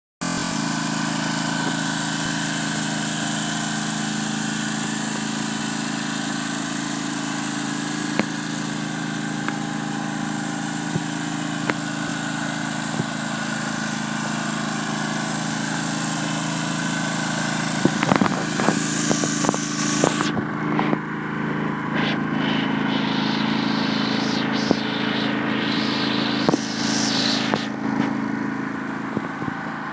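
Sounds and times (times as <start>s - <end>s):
lawn mower engine running: 0.2s - 29.9s
high hiss: 17.3s - 20.3s, 21.9s - 28.2s.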